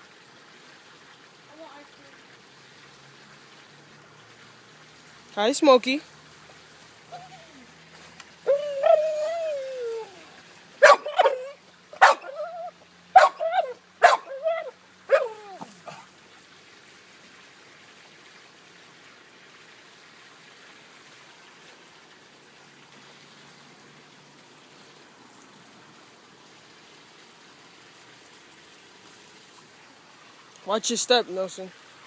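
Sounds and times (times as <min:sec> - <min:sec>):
dog barking and yelping: 0:07.1 - 0:07.7, 0:08.4 - 0:16.1.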